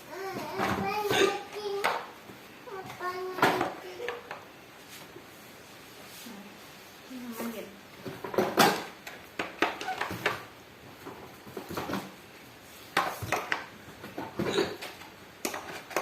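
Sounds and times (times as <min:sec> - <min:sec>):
plastic parts knocking and clicking: 0:08.1 - 0:12.1, 0:12.9 - 0:16.0.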